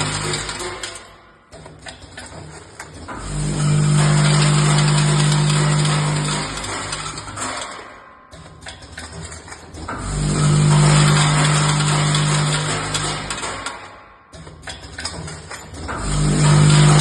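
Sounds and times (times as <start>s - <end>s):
small metal parts clicking: 0.0s - 3.3s, 4.4s - 10.2s, 11.0s - 16.3s
parts rattling: 0.0s - 17.0s.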